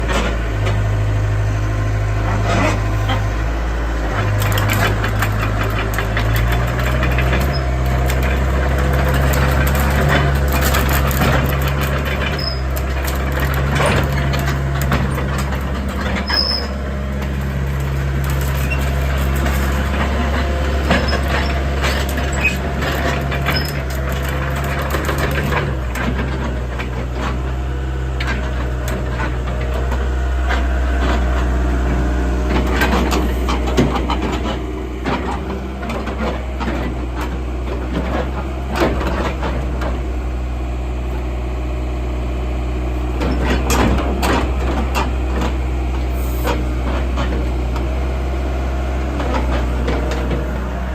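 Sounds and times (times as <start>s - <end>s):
excavator diesel engine: 0.0s - 50.9s
machine clanks and knocks: 4.2s - 27.6s, 32.5s - 40.1s, 43.2s - 45.6s.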